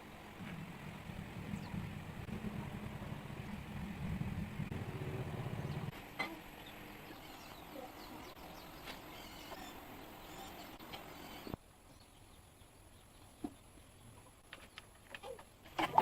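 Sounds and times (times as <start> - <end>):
bird calls: 5.5 - 15.5.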